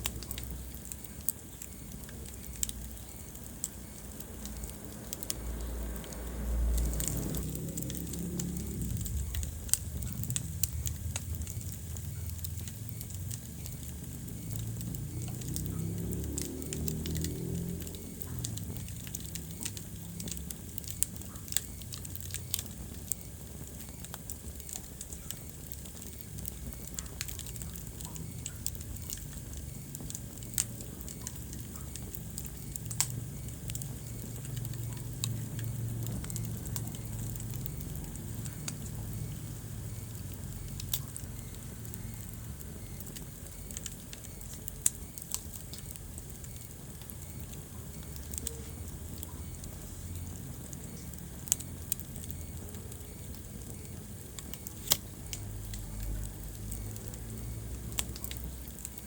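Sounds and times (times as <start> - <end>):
fire crackling and popping: 0.0 - 59.0
low rumble of flames: 0.0 - 59.0.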